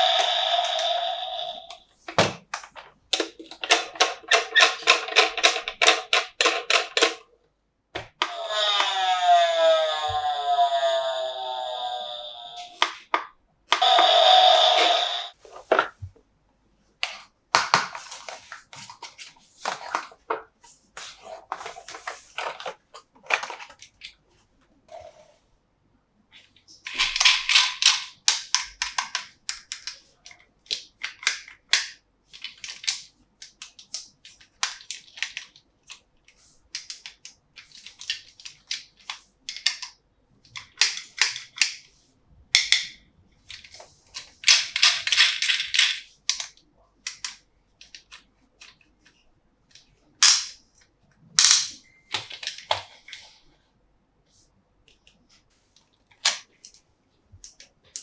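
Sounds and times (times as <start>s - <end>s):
plastic toy parts clicking: 0.0s - 7.3s, 8.0s - 15.9s, 26.8s - 41.9s, 42.5s - 50.6s, 51.4s - 53.3s, 57.4s - 58.0s.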